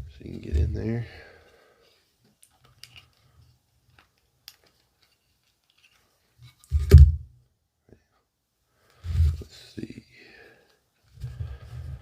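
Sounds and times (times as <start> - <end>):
plastic parts clicking: 2.4 - 3.2, 3.9 - 6.0.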